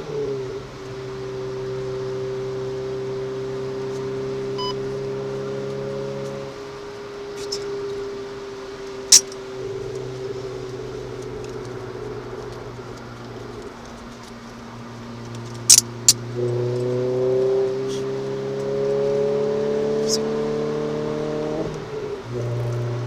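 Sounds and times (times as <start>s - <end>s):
car engine from inside: 0.0s - 23.0s
sharp clicks: 15.4s - 16.2s.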